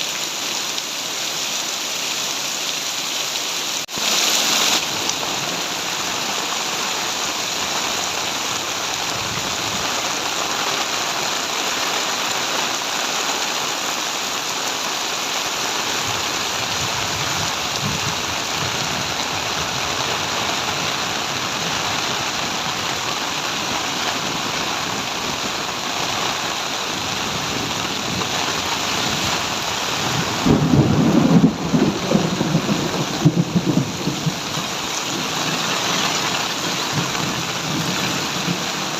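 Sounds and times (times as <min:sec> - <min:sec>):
heavy rain pouring: 0:00.0 - 0:38.9
thunder rumbling: 0:27.0 - 0:38.9.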